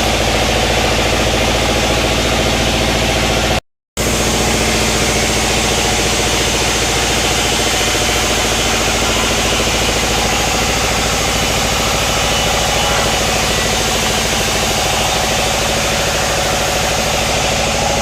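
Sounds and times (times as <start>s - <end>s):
sawmill machinery droning: 0.0s - 18.0s.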